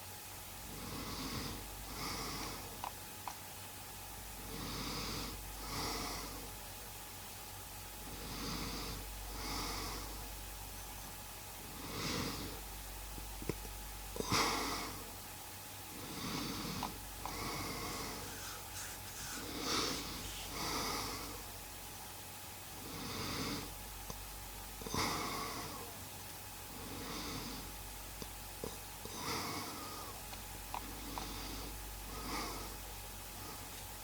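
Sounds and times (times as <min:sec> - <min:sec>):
man snoring: 0:16.1 - 0:21.4.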